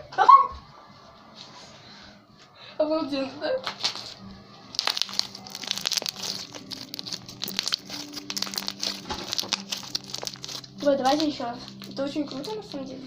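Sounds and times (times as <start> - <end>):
slime crackling and popping: 4.7 - 12.6.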